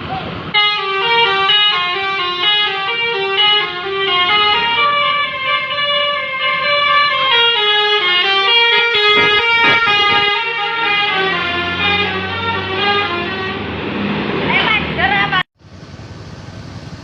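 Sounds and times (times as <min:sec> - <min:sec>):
musical bus horn melody: 0:00.5 - 0:13.8
sharp knocks: 0:08.8 - 0:10.6.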